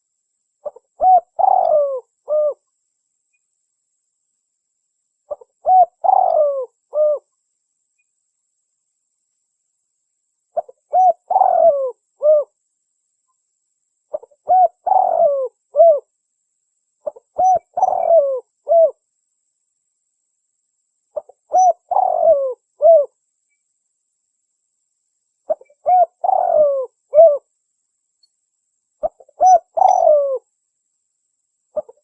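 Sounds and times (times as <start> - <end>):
dove cooing: 0.6 - 2.6, 5.3 - 7.3, 10.6 - 12.5, 14.1 - 16.1, 17.0 - 19.0, 21.2 - 23.1, 25.5 - 27.5, 29.0 - 30.5, 31.8 - 32.0.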